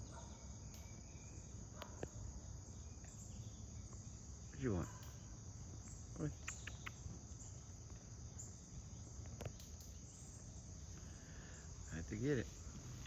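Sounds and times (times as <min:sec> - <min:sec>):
insects chorus: 0:00.0 - 0:13.0
faint short clicks: 0:06.2 - 0:07.0.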